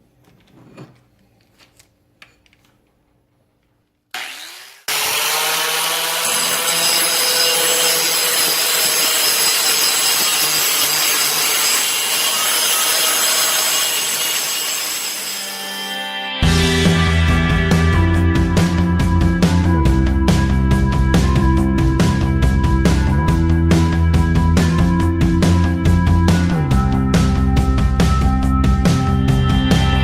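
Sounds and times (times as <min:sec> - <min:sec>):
angle grinder grinding steel: 0:04.2 - 0:17.0.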